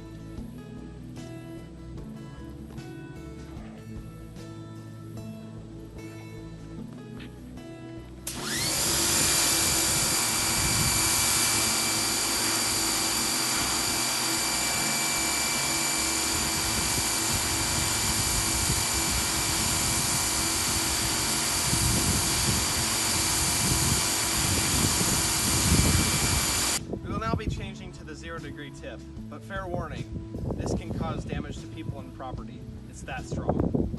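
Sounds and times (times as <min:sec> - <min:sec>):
pressure washer motor whine: 0:08.2 - 0:26.8
high-pressure water jet hissing: 0:08.3 - 0:26.8.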